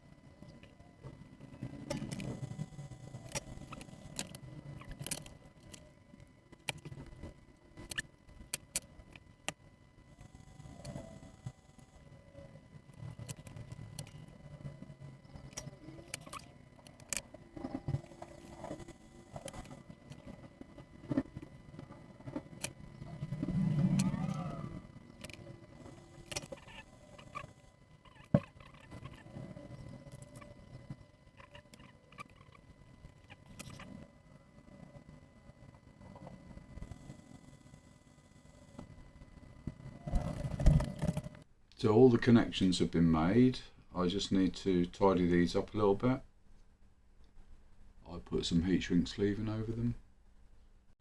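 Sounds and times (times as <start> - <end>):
rustling and handling noise: 0.0 - 37.3, 38.8 - 50.7
small parts clicking and tapping: 0.4 - 12.2, 12.8 - 34.1.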